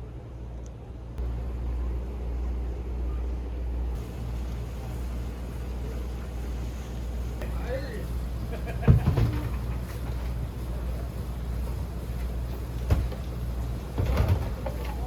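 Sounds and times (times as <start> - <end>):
vehicle rumble: 0.0 - 15.0.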